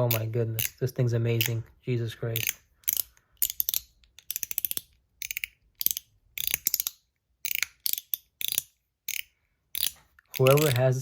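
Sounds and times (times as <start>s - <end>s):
metal slider fidget clicking: 2.4s - 10.9s.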